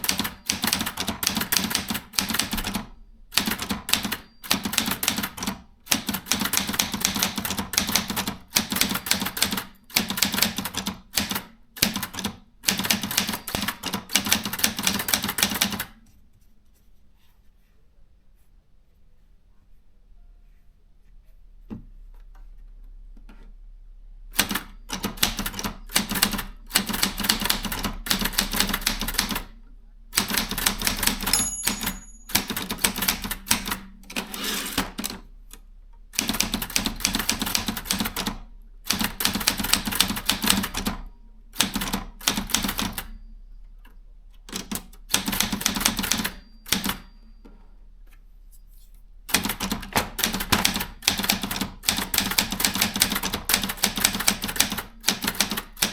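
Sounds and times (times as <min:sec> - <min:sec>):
low steady hum: 0:16.0 - 0:24.4, 0:29.5 - 0:34.1, 0:38.2 - 0:38.9
typewriter key strikes: 0:30.2 - 0:33.9, 0:44.6 - 0:47.1.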